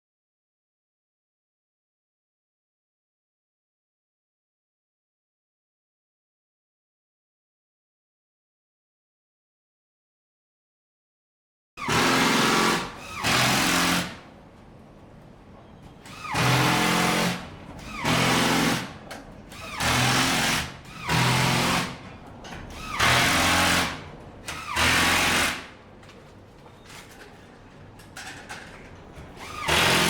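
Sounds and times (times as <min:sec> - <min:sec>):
power tool bursts: 0:11.8 - 0:14.2, 0:22.8 - 0:25.7, 0:29.4 - 0:30.0.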